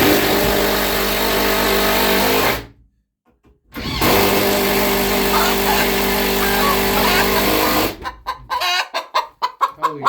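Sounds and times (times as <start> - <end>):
power drill driving a screw: 3.8 - 8.0.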